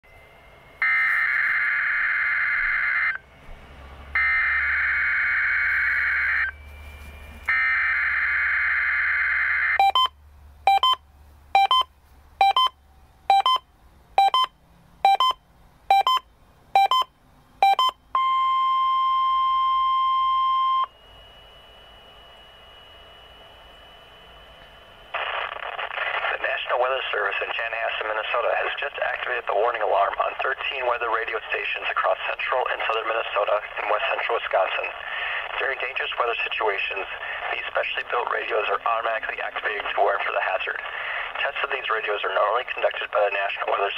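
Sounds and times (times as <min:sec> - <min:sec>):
warning alarm tone: 0:00.1 - 0:11.0, 0:14.2 - 0:25.0
faint steady tone: 0:00.1 - 0:25.8
short beeps: 0:09.8 - 0:11.0, 0:11.6 - 0:21.0.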